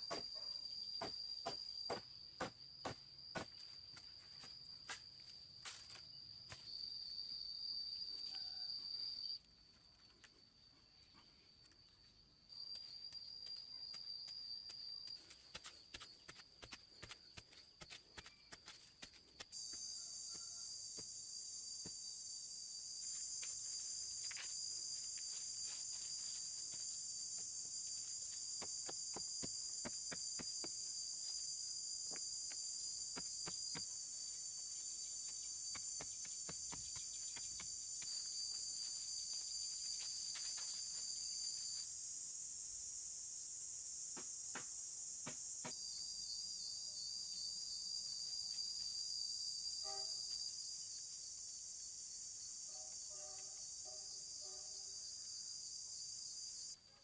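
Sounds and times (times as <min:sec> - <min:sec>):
high-pitched insect chorus: 0:00.0 - 0:57.0.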